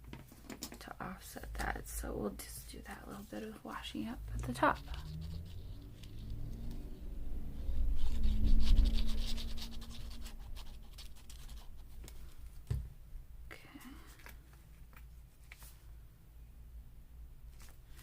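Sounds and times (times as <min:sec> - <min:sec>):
paper rubbing and crinkling: 0:02.9 - 0:06.8, 0:07.6 - 0:12.6, 0:14.1 - 0:15.8.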